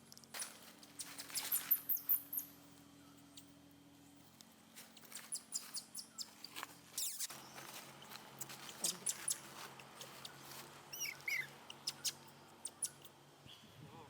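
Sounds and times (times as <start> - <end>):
baby monkey squeaking and crying: 1.0 - 2.5, 5.0 - 13.1.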